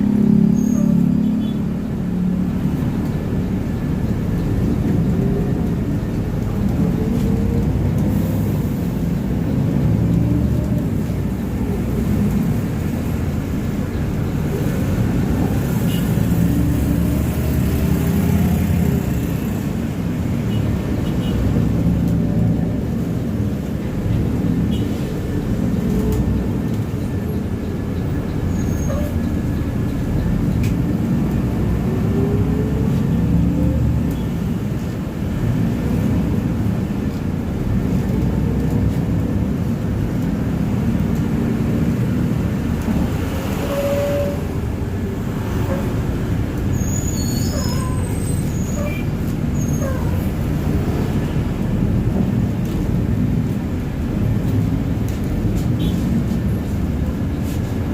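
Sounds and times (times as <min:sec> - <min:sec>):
bus engines: 0:00.0 - 0:57.9
city traffic rumble: 0:00.0 - 0:57.9
short high squeaks: 0:46.7 - 0:50.2.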